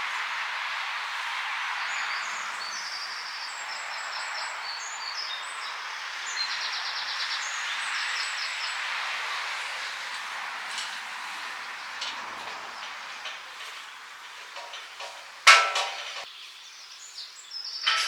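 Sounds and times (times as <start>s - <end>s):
outdoor background hiss: 0.0s - 18.0s
small birds singing: 0.0s - 18.0s.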